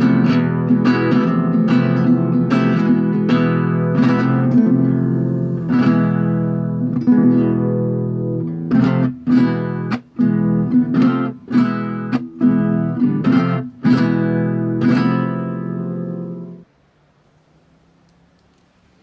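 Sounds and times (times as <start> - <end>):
acoustic guitar strumming: 0.0 - 16.7.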